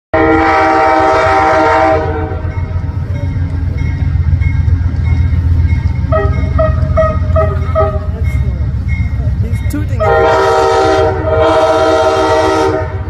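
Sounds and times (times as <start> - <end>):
locomotive air horn chord: 0.2 - 2.6, 6.1 - 8.2, 10.0 - 13.0
low rumble of train: 0.2 - 13.0.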